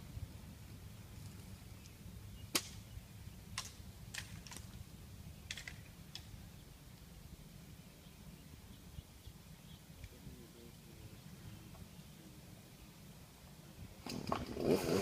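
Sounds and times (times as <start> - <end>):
low steady rumble: 0.0 - 14.6.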